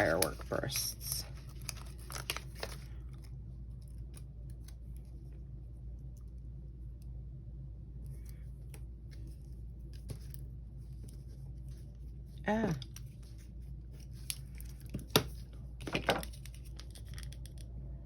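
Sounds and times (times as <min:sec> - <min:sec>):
low room hum: 0:00.0 - 0:18.0.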